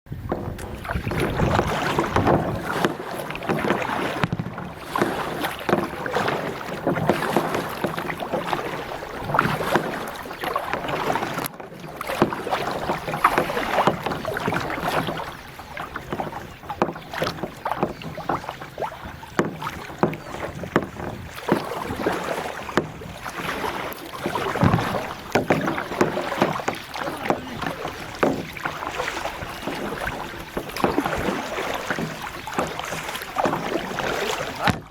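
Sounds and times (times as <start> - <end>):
paddle splashing in water: 0.1 - 34.9
water trickling: 0.3 - 34.9.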